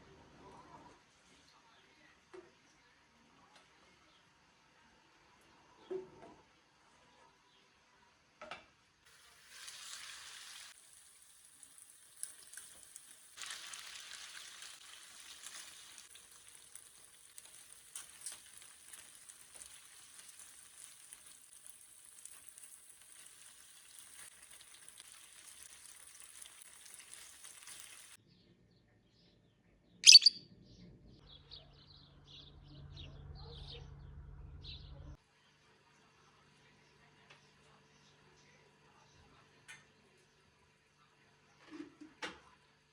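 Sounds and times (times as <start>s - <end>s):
food sizzling in a pan: 9.1s - 28.2s
faint bird chirps: 30.0s - 32.0s.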